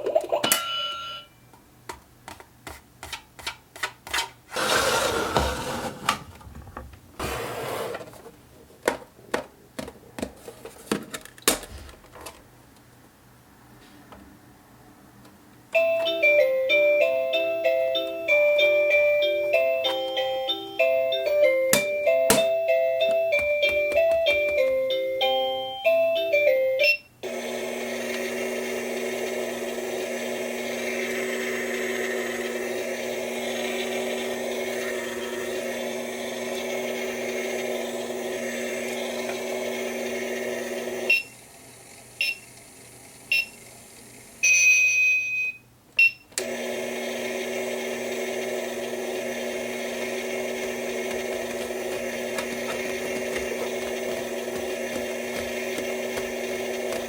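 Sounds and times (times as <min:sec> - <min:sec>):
toy electronic tune: 0:15.8 - 0:27.1
toy motor hum: 0:49.5 - 0:57.0.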